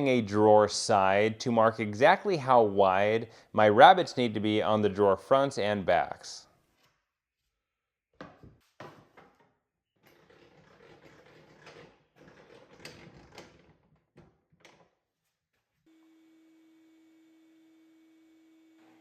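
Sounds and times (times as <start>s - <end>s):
wood knocks and scrapes on workbench: 8.2s - 14.3s.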